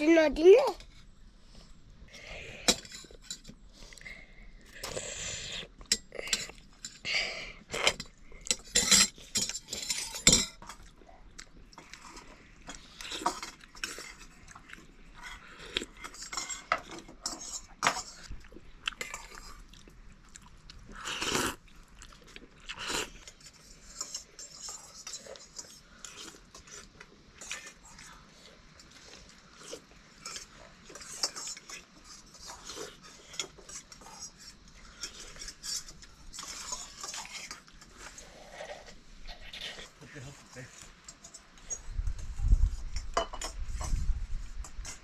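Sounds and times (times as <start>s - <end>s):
people chewing: 1.5s - 45.0s
cutlery clinking on plates: 7.8s - 10.9s, 15.2s - 18.2s, 42.9s - 44.0s.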